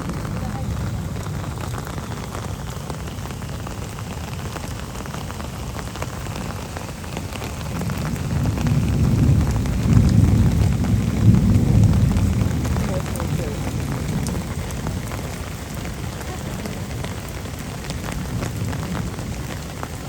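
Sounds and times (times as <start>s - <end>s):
steady rain falling: 0.0s - 20.0s
thunder rolling: 7.7s - 19.9s.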